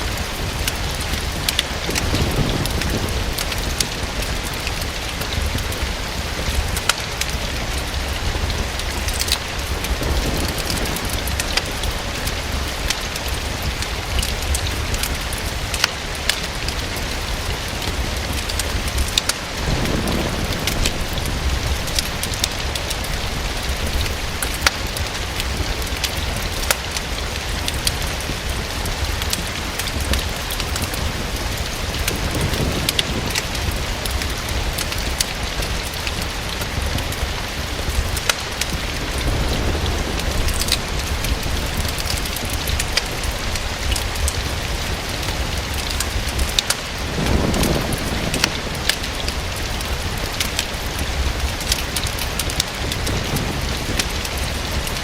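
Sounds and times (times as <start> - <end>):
fireplace crackling: 0.0 - 55.0
rain against a window: 0.0 - 55.0
low rumbles: 27.2 - 55.0.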